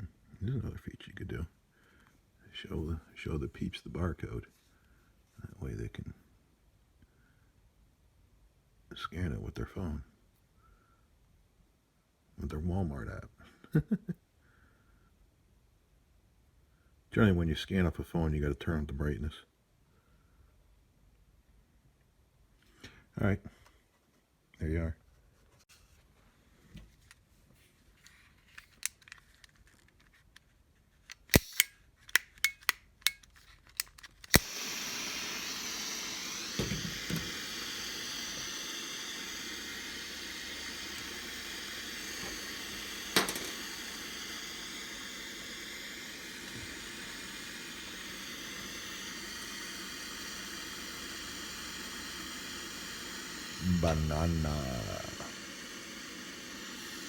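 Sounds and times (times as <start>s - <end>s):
igniter clicks: 33.8s - 57.0s
torch flame hissing: 34.3s - 57.0s.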